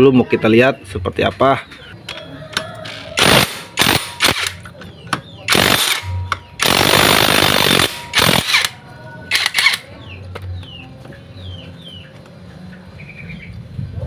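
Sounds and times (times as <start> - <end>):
pneumatic impact wrench bursts: 3.2 - 4.6, 5.5 - 8.7, 9.3 - 9.8.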